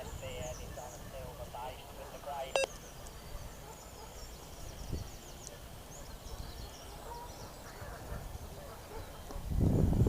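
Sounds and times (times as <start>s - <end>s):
small birds singing: 2.0s - 9.9s.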